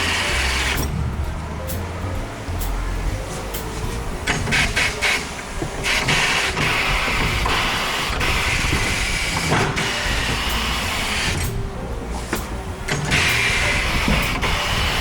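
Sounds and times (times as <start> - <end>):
hiss of rushing air: 2.6 - 15.0
sharp clicks and knocks: 3.5 - 11.6.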